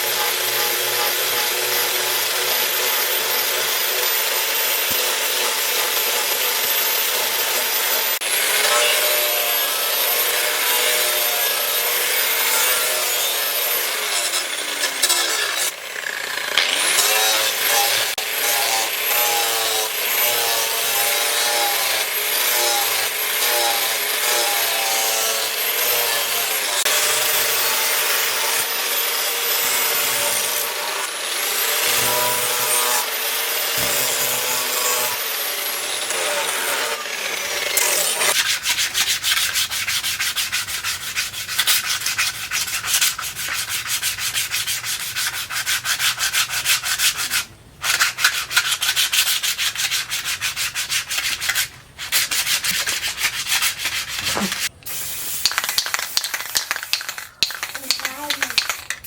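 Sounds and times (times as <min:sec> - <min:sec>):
power tool whining: 0:00.0 - 0:38.4
hand sanding strokes: 0:38.3 - 0:59.0.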